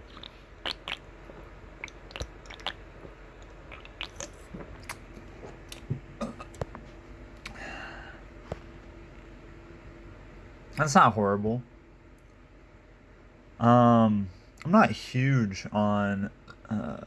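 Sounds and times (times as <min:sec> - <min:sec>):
person swallowing: 0:00.0 - 0:05.0
mouth and lip smacks: 0:00.0 - 0:05.1.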